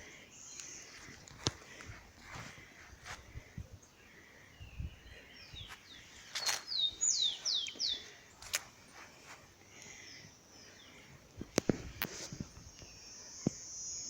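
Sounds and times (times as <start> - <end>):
bird singing: 0.0 - 14.0.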